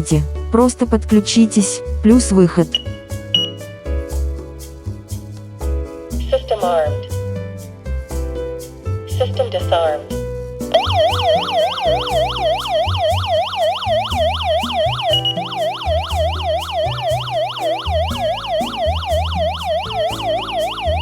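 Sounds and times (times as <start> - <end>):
short high beep: 2.8 - 3.6, 10.8 - 21.0
warbling alarm siren: 10.8 - 21.0.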